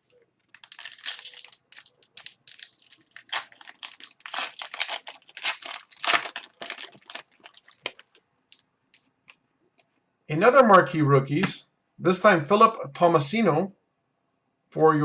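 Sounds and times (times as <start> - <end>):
wrapper crinkling and tearing: 0.4 - 9.1.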